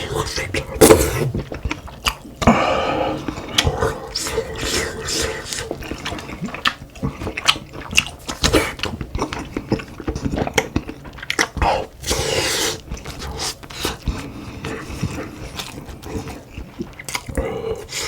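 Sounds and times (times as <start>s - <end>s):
person slurping broth: 0.0s - 1.5s, 2.4s - 7.2s, 11.6s - 16.4s
person chewing: 0.0s - 18.0s.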